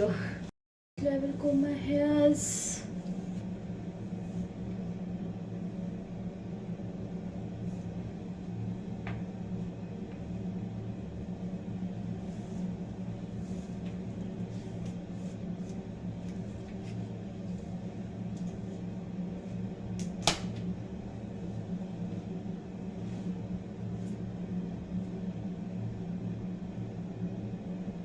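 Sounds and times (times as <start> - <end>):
low electrical hum: 0.0 - 28.0.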